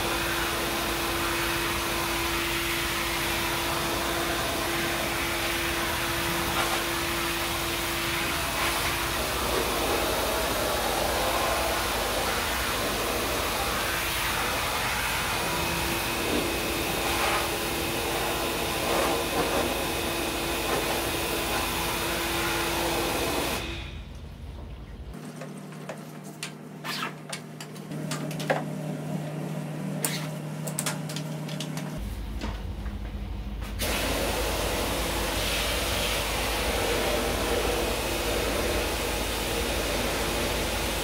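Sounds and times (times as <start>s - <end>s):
pressure washer spraying water: 0.0s - 23.7s, 33.8s - 41.0s.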